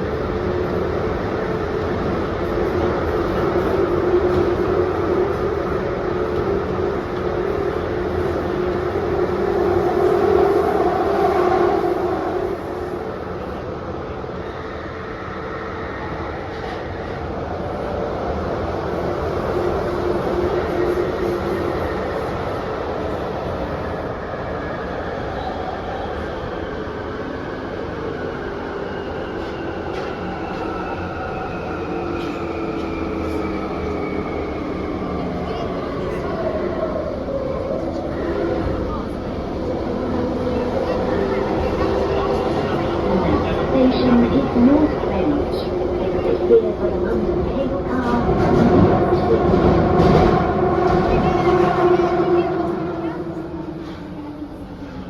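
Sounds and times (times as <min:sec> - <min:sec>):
train rumbling on board: 0:00.0 - 0:55.0
train wheels rumbling: 0:28.7 - 0:55.0.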